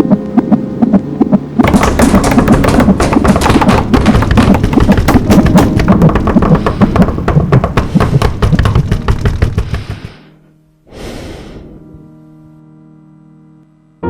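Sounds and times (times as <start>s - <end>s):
fast percussion music: 1.6s - 10.1s.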